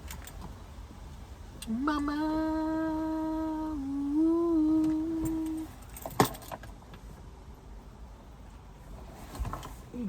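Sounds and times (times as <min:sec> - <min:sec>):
person humming: 0:01.6 - 0:05.7.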